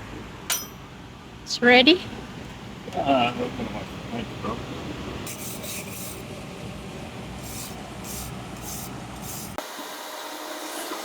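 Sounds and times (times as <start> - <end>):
low background rumble: 0.0 - 9.6
spray can hissing: 5.3 - 6.2, 7.4 - 9.6.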